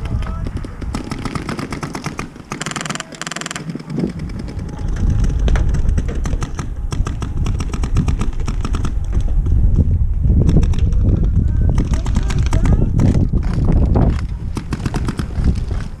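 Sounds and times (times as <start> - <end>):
wind on microphone: 0.0 - 16.0
airsoft gun bursts: 0.8 - 4.0
microphone handling noise: 3.5 - 16.0.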